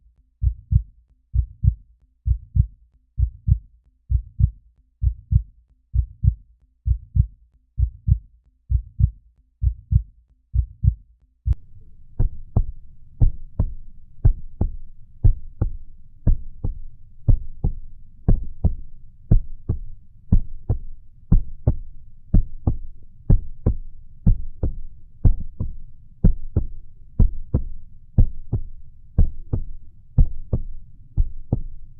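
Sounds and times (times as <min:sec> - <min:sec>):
heartbeat thumps: 0:00.4 - 0:31.9
faint steady hiss: 0:11.6 - 0:31.9.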